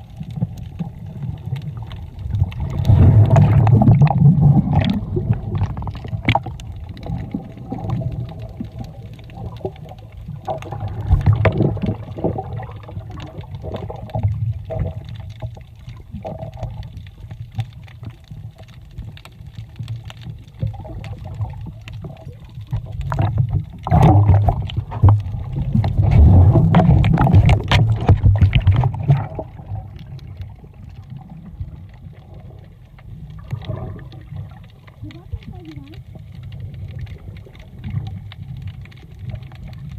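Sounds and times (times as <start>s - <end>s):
water sloshing and gurgling: 0.0s - 39.9s.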